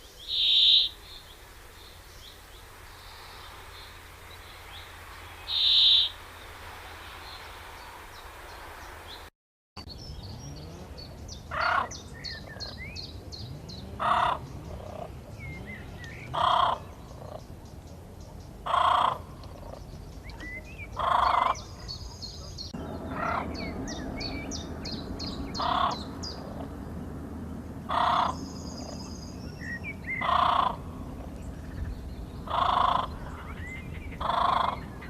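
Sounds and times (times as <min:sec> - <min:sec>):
loud high bird call: 0:00.0 - 0:01.3, 0:02.9 - 0:06.6, 0:20.6 - 0:26.7, 0:27.9 - 0:30.8
background hiss: 0:00.0 - 0:09.3
small birds chirping: 0:00.0 - 0:35.0
bird giving loud calls: 0:00.2 - 0:01.0, 0:05.4 - 0:06.2, 0:11.5 - 0:12.7, 0:14.0 - 0:15.1, 0:16.2 - 0:17.4, 0:18.6 - 0:19.8, 0:21.0 - 0:21.8, 0:25.5 - 0:26.7, 0:27.9 - 0:28.4, 0:30.1 - 0:30.9, 0:32.5 - 0:35.0.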